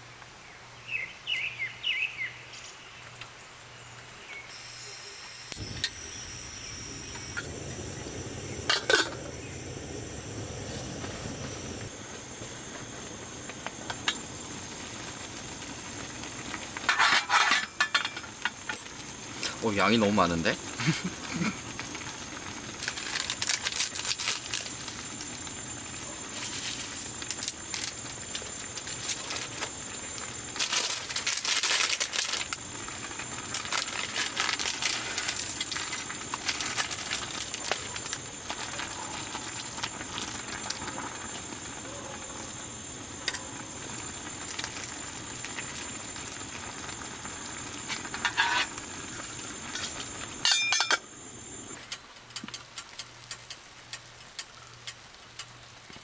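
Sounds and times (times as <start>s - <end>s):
food sizzling on stove: 4.5s - 51.9s
utensils clinking: 49.7s - 51.0s.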